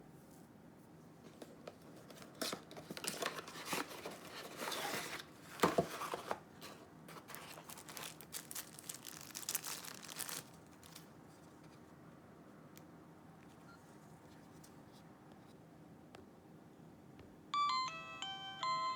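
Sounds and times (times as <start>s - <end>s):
packaging crinkling and tearing: 2.2s - 11.2s.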